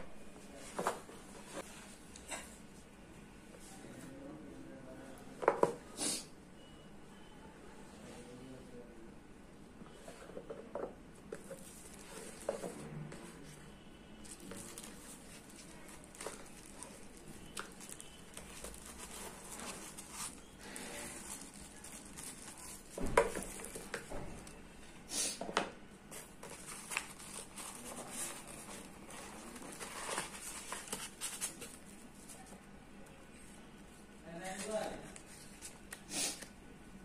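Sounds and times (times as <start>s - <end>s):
packaging crinkling and rustling: 14.2s - 24.6s, 26.1s - 32.6s.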